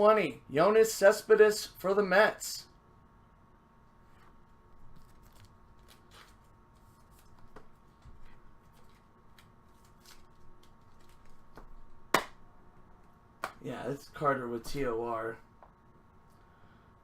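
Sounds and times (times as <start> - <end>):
cards being handled: 4.9 - 12.4.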